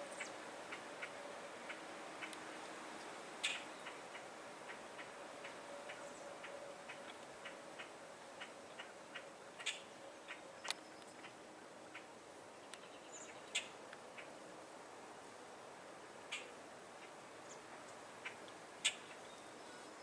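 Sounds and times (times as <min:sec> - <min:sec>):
low steady hum: 0:00.0 - 0:20.0.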